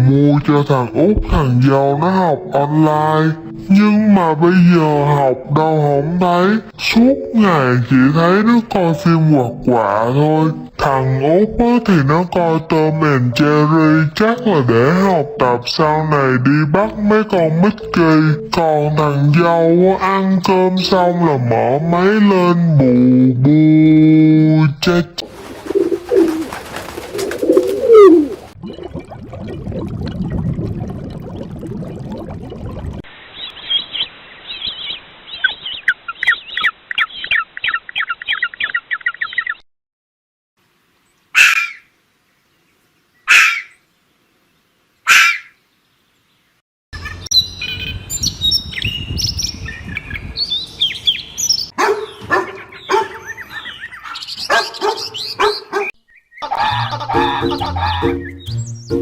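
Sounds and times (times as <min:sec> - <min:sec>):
birds chirping: 0:24.9 - 0:28.6, 0:33.3 - 0:39.6, 0:41.0 - 0:59.0
short sharp bird calls: 0:43.2 - 0:43.8, 0:45.1 - 0:45.6.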